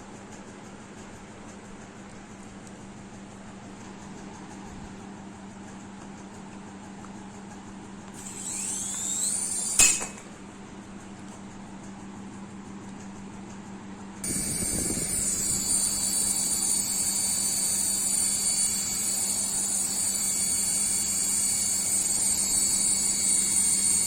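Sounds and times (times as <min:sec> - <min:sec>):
toy helicopter motor whine: 0:08.2 - 0:10.2, 0:14.2 - 0:24.0.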